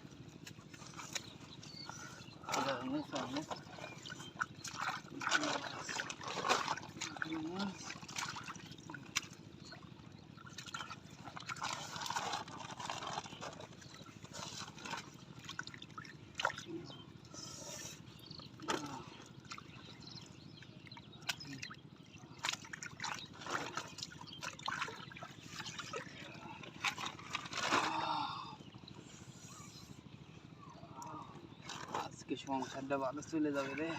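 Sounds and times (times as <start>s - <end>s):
water sloshing and dripping: 0.0s - 17.3s, 18.0s - 28.1s, 31.0s - 33.9s
small splashes: 0.4s - 17.0s, 18.2s - 28.2s.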